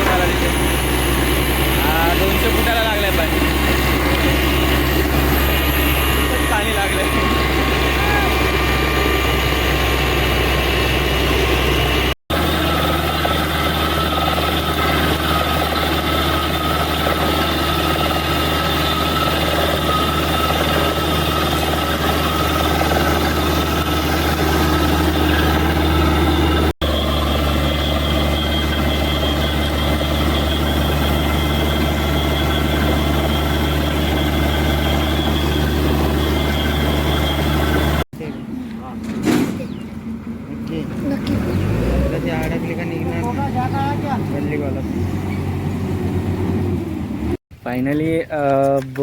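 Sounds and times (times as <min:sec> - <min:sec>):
compressor hissing: 0:00.0 - 0:38.0
diesel engine deep hum: 0:00.0 - 0:47.9.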